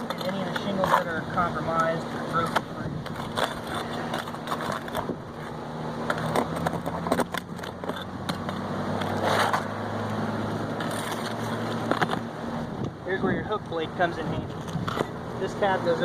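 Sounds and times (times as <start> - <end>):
shingles tearing loose: 3.0 - 9.7.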